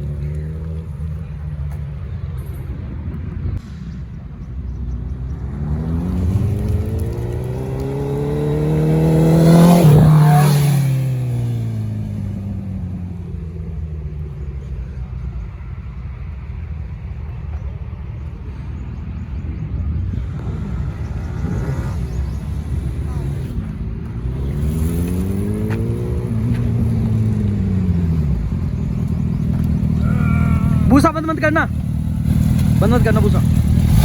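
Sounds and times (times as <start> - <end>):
motorcycle engine passing by: 5.2 - 14.1, 20.0 - 34.0.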